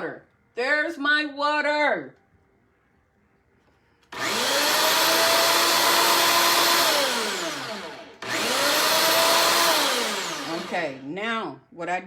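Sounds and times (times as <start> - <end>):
electric motor running: 4.2 - 11.1.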